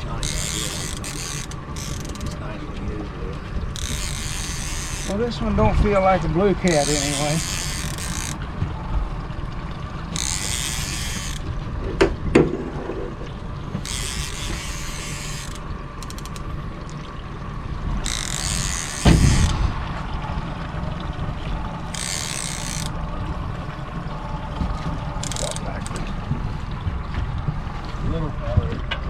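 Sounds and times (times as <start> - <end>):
fishing reel ratcheting: 0.0 - 2.4, 3.7 - 5.3, 6.6 - 8.4, 10.1 - 11.5, 13.8 - 16.5, 18.0 - 19.6, 21.8 - 23.0, 25.2 - 26.0
low rumble: 19.2 - 22.0.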